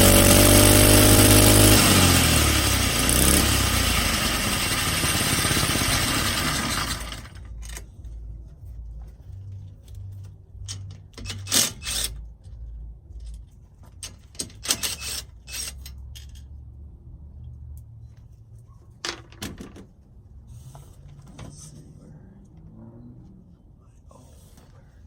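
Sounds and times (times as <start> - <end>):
low steady hum: 7.0 - 14.3.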